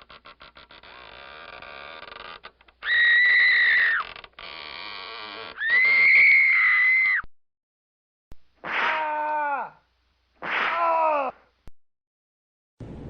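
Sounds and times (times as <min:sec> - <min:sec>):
high-pitched screams: 0:02.8 - 0:04.1, 0:05.6 - 0:07.3.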